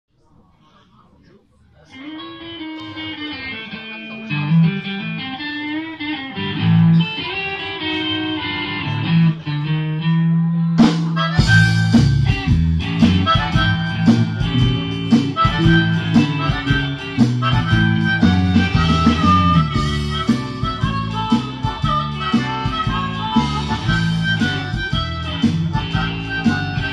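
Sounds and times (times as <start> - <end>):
guitar: 0.1 - 26.9
harmonica melody: 1.9 - 26.9
full band with bass: 6.4 - 26.9.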